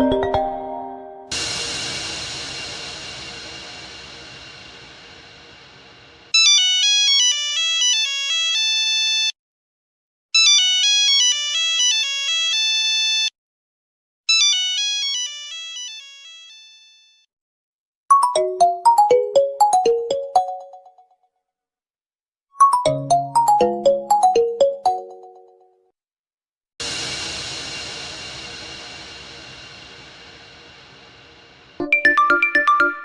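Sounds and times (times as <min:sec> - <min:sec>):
high electronic ringtone melody: 0:18.1 - 0:20.9, 0:22.6 - 0:25.5, 0:31.8 - 0:33.0
lower bell-like ringtone: 0:18.1 - 0:20.9, 0:22.6 - 0:25.5, 0:31.8 - 0:33.0.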